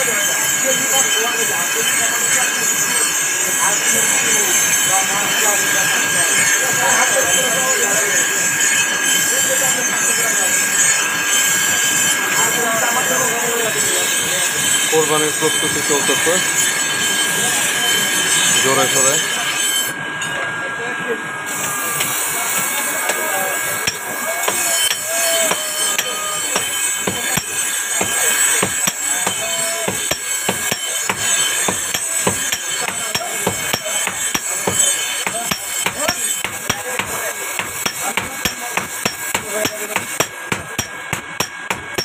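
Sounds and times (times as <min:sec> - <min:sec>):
hammers striking iron on anvils: 0:21.6 - 0:42.0.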